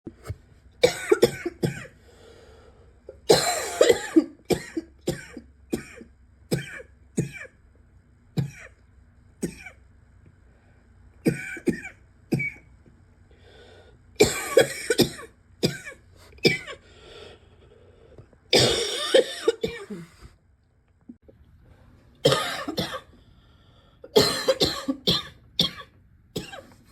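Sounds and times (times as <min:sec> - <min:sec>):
harsh barking cough: 0:03.2 - 0:07.5, 0:18.5 - 0:20.1, 0:22.2 - 0:23.1, 0:24.1 - 0:26.6.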